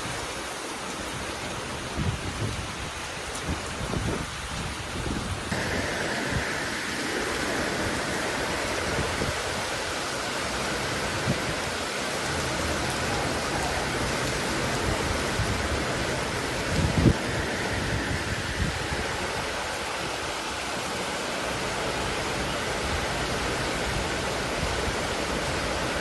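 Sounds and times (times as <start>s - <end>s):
heavy rain falling: 0.0s - 26.0s
low rumbling: 5.4s - 19.7s.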